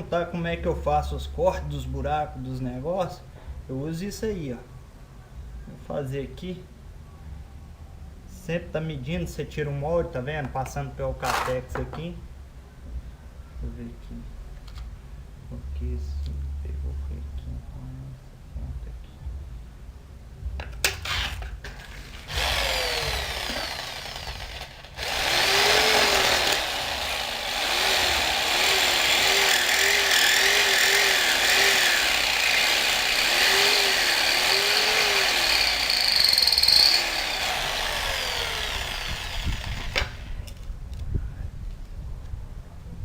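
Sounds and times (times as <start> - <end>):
handheld power tool cutting: 21.0 - 40.5.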